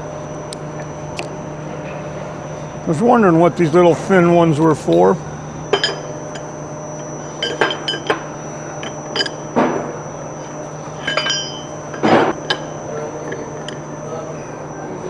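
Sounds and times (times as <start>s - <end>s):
metal parts clinking: 2.6s - 14.2s
metal parts scraping: 4.5s - 14.2s.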